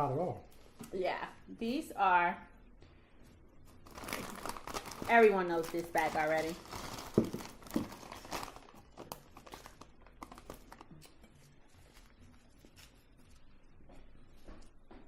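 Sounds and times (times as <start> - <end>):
chip bag crinkling: 3.8 - 10.9.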